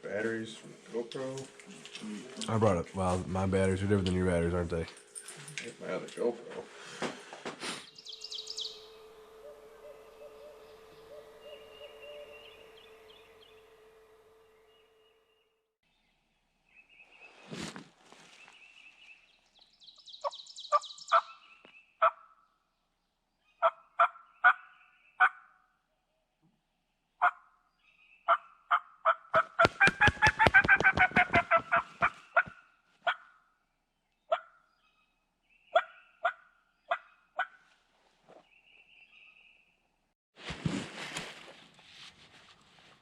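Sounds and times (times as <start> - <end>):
turkey call notes: 6.8 - 15.5
turkey rattling gobble: 23.6 - 25.5, 28.3 - 33.3, 35.8 - 37.6.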